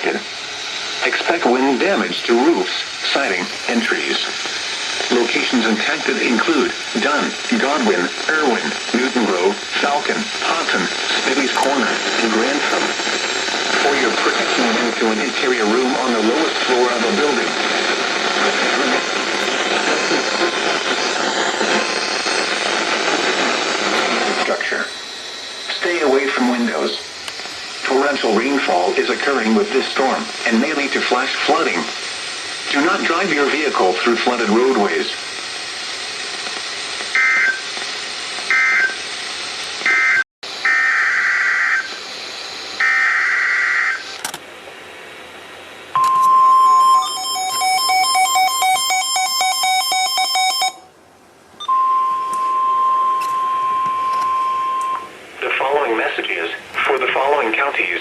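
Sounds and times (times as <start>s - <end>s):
radio static hiss: 0.0s - 47.6s, 53.1s - 58.0s
synthesized voice speaking: 1.0s - 4.4s, 5.1s - 13.0s, 13.7s - 17.6s, 23.9s - 25.0s, 25.6s - 27.1s, 27.8s - 31.9s, 32.7s - 35.2s, 55.4s - 58.0s.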